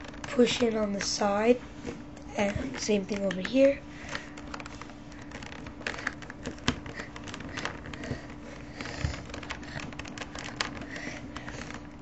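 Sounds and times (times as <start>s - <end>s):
faint steady hum: 0.0s - 12.0s
plastic puzzle cube pieces clicking: 2.3s - 11.9s.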